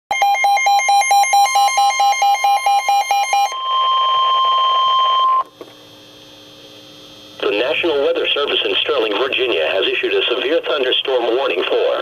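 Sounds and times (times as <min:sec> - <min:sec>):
electronic alarm beeping: 0:00.1 - 0:05.5
steady warning alarm tone: 0:00.1 - 0:05.5
faint radio hiss: 0:07.4 - 0:12.0.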